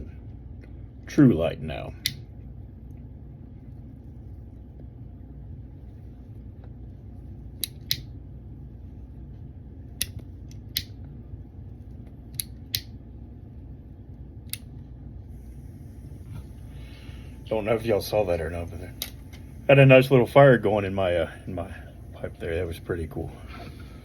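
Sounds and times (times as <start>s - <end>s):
low background hum: 0.0s - 24.0s
pipe lighter clicking: 7.6s - 8.1s, 10.0s - 11.0s.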